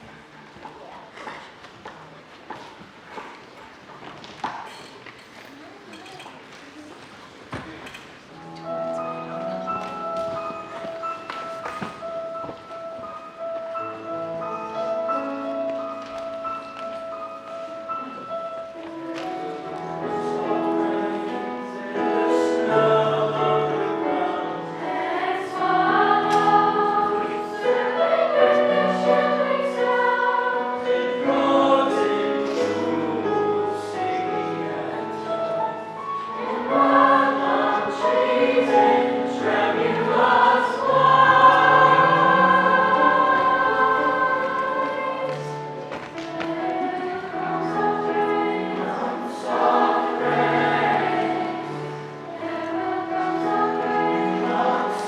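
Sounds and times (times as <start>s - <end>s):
piano accompaniment: 8.2s - 55.0s
choir singing: 19.5s - 55.0s.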